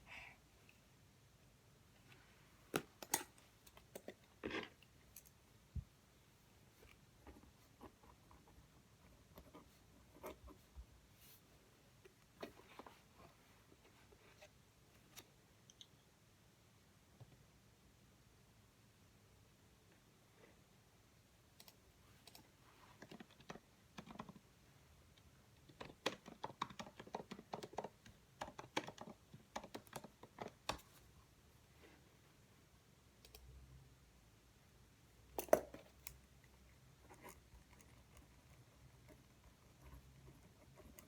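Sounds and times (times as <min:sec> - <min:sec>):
faint clicks and taps at desk: 0:21.6 - 0:24.5, 0:25.1 - 0:31.0.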